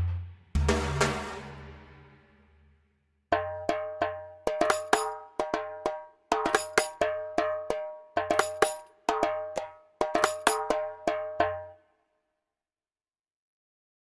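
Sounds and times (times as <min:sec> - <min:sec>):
deep drum: 0:03.3 - 0:11.7
metallic bell-like percussion: 0:03.4 - 0:11.8.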